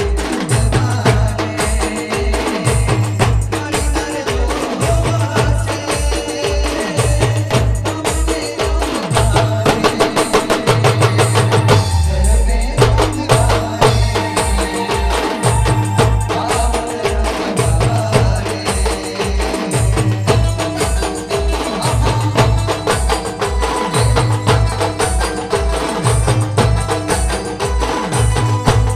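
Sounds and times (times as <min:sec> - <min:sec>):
fast drum and percussion rhythm: 0:00.0 - 0:28.9
heavy low beat: 0:09.1 - 0:28.9
repeating melodic line: 0:11.1 - 0:17.3.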